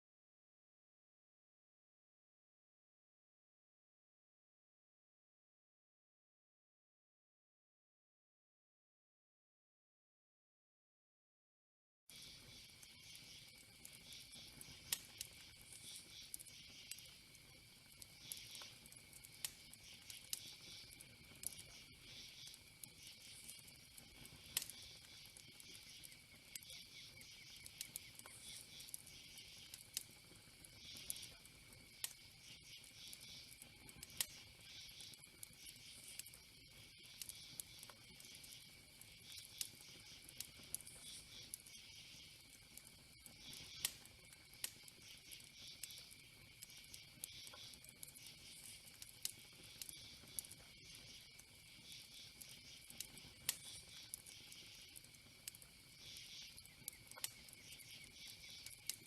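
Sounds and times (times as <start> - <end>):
fire crackling and popping: 12.1 - 59.0
insects chirring: 12.1 - 59.0.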